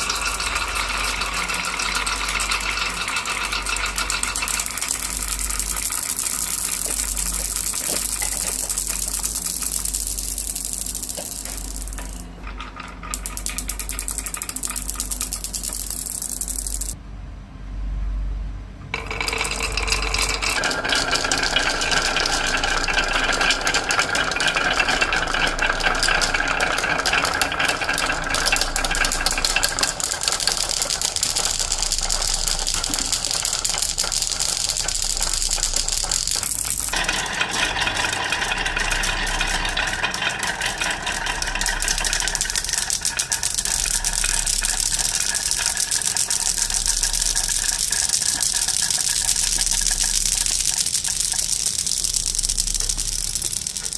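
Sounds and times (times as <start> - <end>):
marbles clattering down track: 0.0 - 17.0, 18.9 - 53.9.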